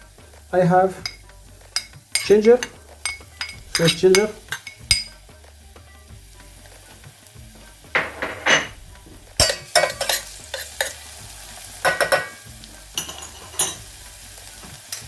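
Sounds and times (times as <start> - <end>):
oil sizzling in a pan: 0.0 - 15.0
utensil scraping a pan: 1.8 - 5.1, 8.0 - 11.2.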